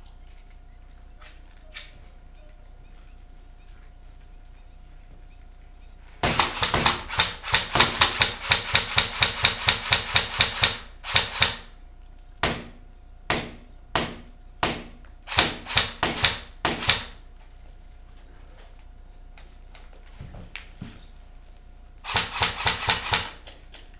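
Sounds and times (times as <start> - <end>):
airsoft gun shots: 6.2 - 11.7, 12.4 - 17.2, 22.1 - 23.4.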